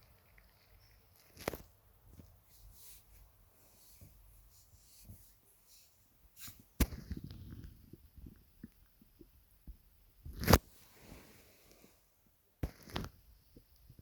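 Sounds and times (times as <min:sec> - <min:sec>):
stomach gurgling: 0:07.0 - 0:09.4.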